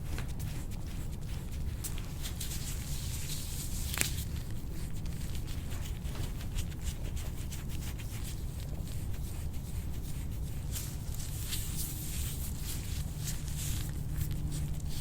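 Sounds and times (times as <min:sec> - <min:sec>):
hands rubbing skin: 0:00.0 - 0:15.0
low steady hum: 0:00.0 - 0:15.0.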